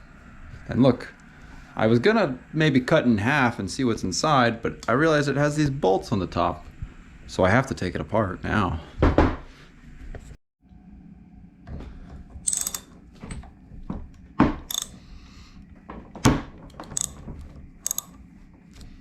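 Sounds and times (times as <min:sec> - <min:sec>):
metal tools clinking: 0:12.4 - 0:13.5, 0:14.7 - 0:15.0, 0:16.7 - 0:17.2, 0:17.8 - 0:18.2
ratchet wrench clicking: 0:12.5 - 0:12.9, 0:14.7 - 0:15.0, 0:16.7 - 0:17.2, 0:17.8 - 0:18.2.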